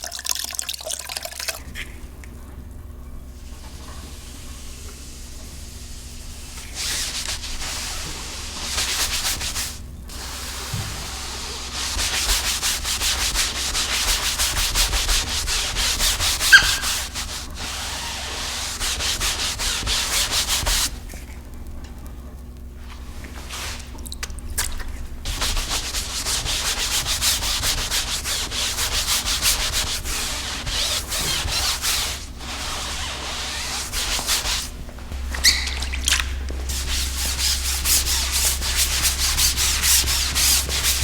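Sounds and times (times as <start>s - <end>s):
rhythmic rubbing strokes on a surface: 5.8s - 21.1s, 25.2s - 41.0s.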